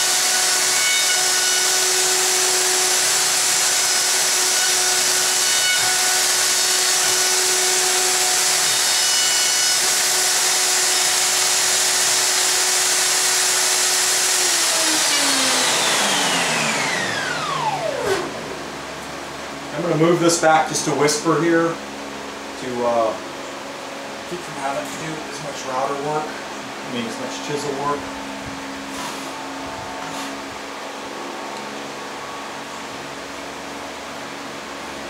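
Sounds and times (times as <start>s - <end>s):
router running and winding down: 0.0s - 18.8s.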